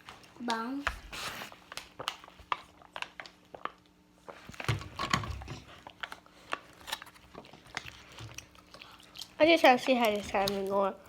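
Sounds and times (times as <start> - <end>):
person chewing: 5.6 - 10.7.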